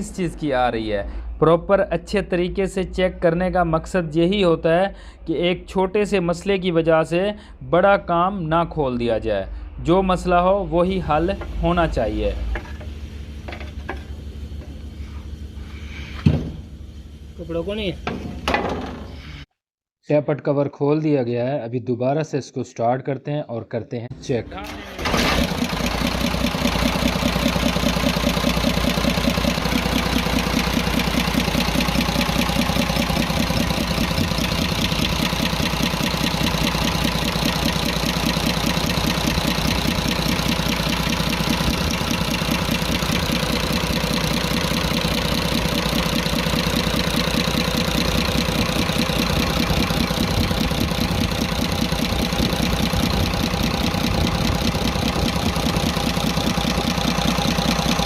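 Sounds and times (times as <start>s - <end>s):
diesel engine idling: 10.4s - 18.1s, 24.6s - 58.0s
valve train ticking: 25.9s - 58.0s.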